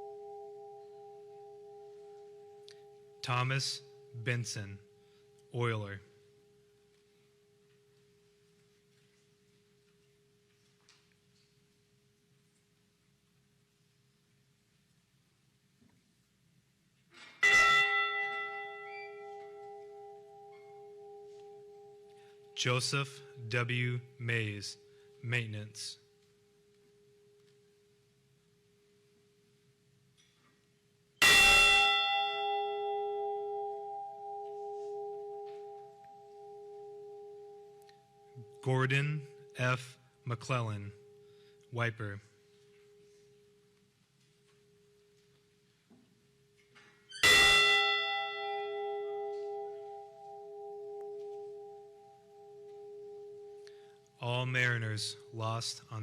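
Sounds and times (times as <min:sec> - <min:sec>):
bell hum: 0:00.0 - 0:06.6, 0:17.4 - 0:25.4, 0:31.2 - 0:41.6, 0:47.1 - 0:55.4.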